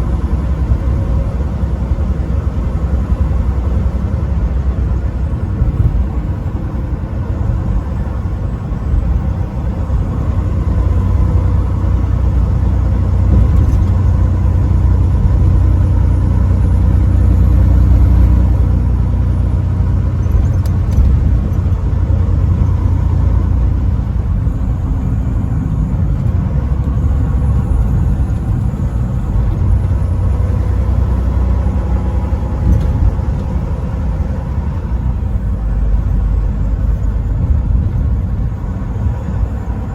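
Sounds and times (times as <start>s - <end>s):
truck rumbling on highway: 0.0s - 39.9s.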